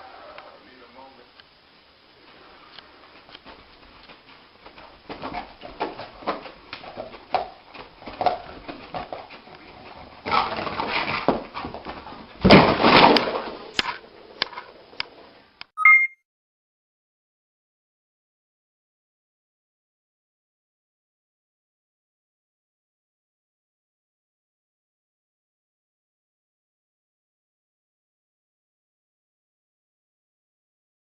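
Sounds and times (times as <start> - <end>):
two-tone beep: 15.8 - 16.2.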